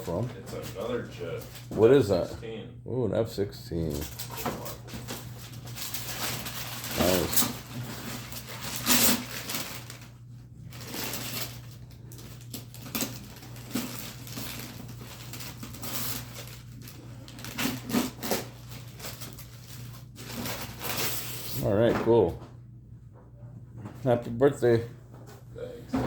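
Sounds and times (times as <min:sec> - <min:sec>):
paper and packaging rustling: 0:00.0 - 0:02.2, 0:03.8 - 0:21.8
steady low hum: 0:00.0 - 0:26.0.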